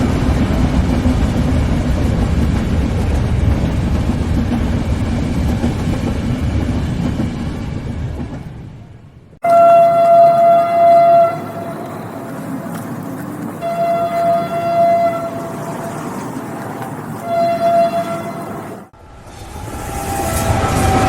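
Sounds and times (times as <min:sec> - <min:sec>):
train rumble: 0:00.0 - 0:21.0
train horn blasts: 0:09.4 - 0:12.0, 0:13.6 - 0:16.0, 0:17.2 - 0:18.8, 0:19.4 - 0:21.0.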